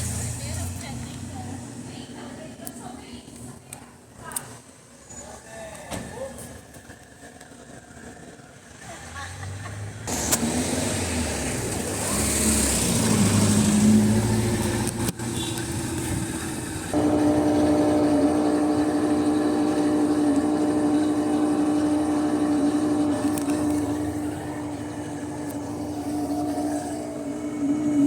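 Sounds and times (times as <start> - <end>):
washing machine drain pump whirring: 10.1 - 28.0.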